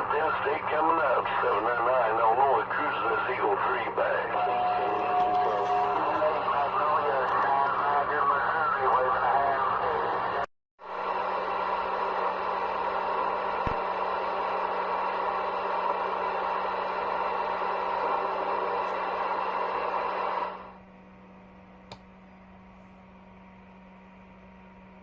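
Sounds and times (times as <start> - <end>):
low steady hum: 0.0 - 10.4, 11.0 - 25.0
radio static hiss: 0.0 - 10.5.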